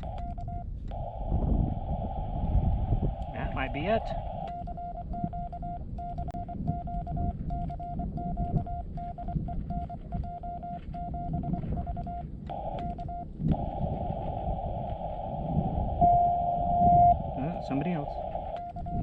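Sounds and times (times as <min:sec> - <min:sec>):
radio hiss: 0:00.0 - 0:00.3, 0:00.9 - 0:04.7, 0:12.5 - 0:19.0
morse code beeps: 0:00.0 - 0:01.6, 0:03.4 - 0:19.0.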